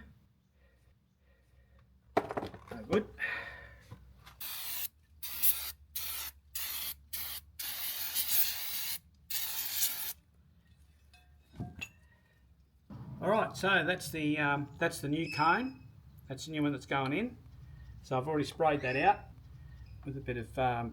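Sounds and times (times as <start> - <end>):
aerosol spray hissing bursts: 4.4 - 10.2.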